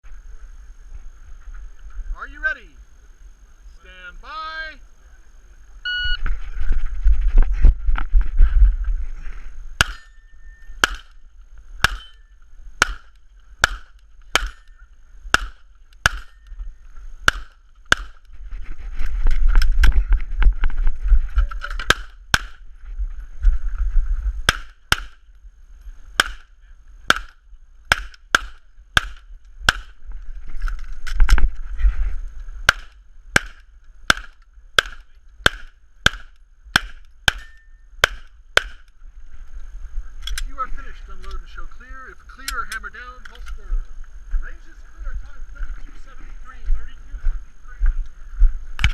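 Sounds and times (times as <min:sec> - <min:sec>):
pistol shots: 0:09.8 - 0:10.2, 0:10.8 - 0:11.2, 0:11.8 - 0:16.5, 0:17.2 - 0:18.2, 0:21.9 - 0:22.6, 0:24.5 - 0:25.2, 0:26.2 - 0:26.5, 0:27.1 - 0:30.0, 0:32.7 - 0:38.8.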